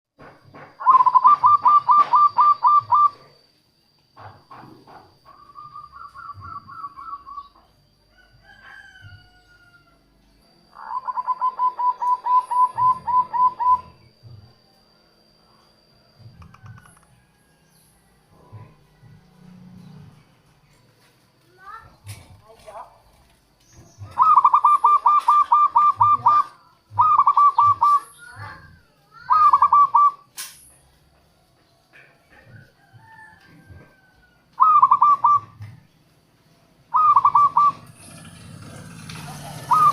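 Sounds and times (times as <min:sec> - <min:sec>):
dove calling: 0:00.2 - 0:03.4, 0:04.2 - 0:09.9, 0:10.7 - 0:14.6, 0:21.6 - 0:36.1, 0:36.8 - 0:39.9
rapid repeated cooing notes: 0:00.8 - 0:03.4, 0:24.0 - 0:30.2, 0:36.9 - 0:39.9
sharp click: 0:30.3 - 0:30.8.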